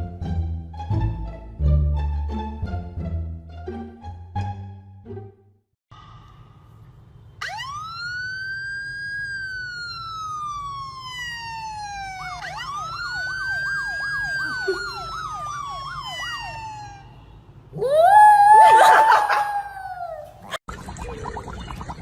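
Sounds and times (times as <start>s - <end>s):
siren yelping warble: 7.4s - 17.2s
emergency siren wailing: 7.4s - 20.2s.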